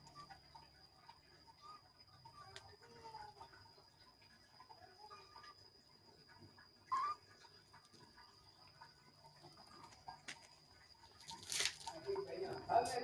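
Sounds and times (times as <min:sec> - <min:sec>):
rustling scuffle: 0:11.2 - 0:12.0.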